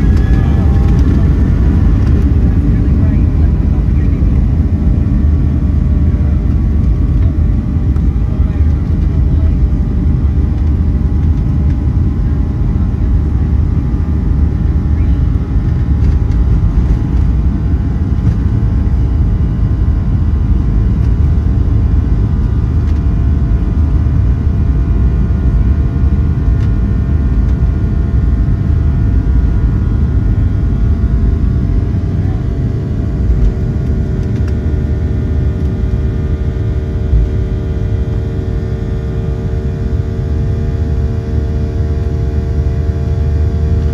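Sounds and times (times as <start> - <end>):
faint steady whining tones: 0.0 - 25.6
jet engines low rumble: 0.0 - 43.9.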